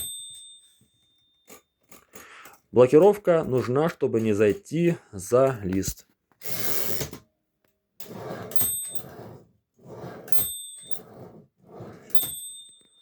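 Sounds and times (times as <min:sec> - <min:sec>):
typewriter bell dinging: 0:08.4 - 0:09.3, 0:10.3 - 0:11.3, 0:12.0 - 0:13.0.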